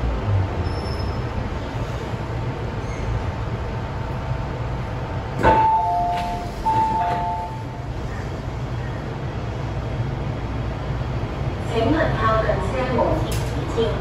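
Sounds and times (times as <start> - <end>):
train running rumble: 0.0 - 14.0
two-tone train chime: 5.4 - 8.0.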